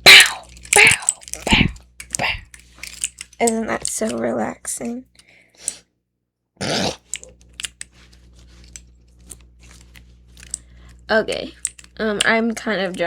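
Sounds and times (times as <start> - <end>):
fidget toys clicking: 0.1 - 4.3, 7.0 - 7.9, 10.4 - 13.0.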